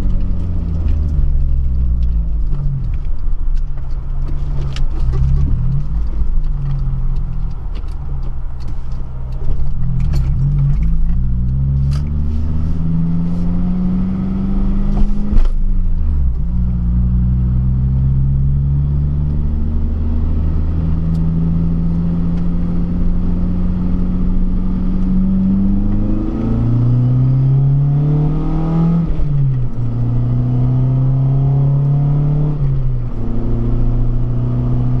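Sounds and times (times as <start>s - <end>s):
car engine accelerating: 0.0s - 35.0s.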